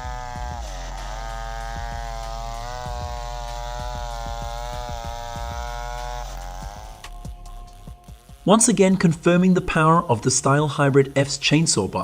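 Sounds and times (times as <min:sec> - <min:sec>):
chainsaw cutting wood: 0:00.0 - 0:08.5.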